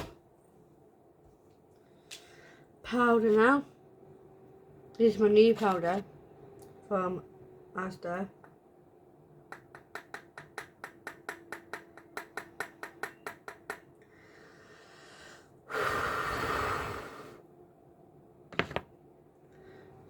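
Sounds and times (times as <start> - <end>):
breathy puff of air: 14.1 - 17.4.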